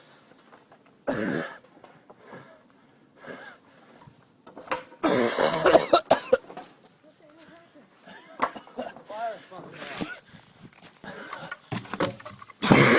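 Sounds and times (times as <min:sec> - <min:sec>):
man clearing his throat: 0:05.0 - 0:06.4
man coughing: 0:05.0 - 0:06.4.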